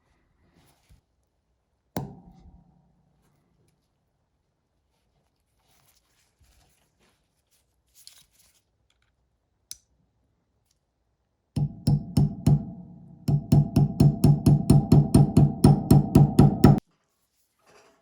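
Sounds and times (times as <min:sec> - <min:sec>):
percussive music with steady beat: 0:11.6 - 0:16.8.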